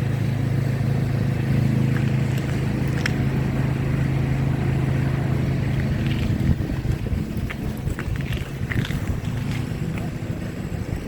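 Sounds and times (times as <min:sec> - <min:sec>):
vehicle engine humming: 0:00.0 - 0:11.0
wind noise on microphone: 0:05.3 - 0:11.0.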